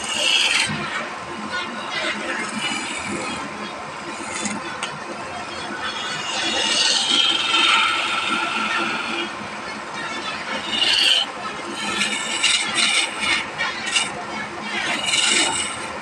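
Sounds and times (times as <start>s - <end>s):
woodworking tool squealing: 0.0s - 0.8s, 5.6s - 9.3s, 10.0s - 16.0s
tool scraping wood: 5.9s - 9.3s, 10.6s - 16.0s.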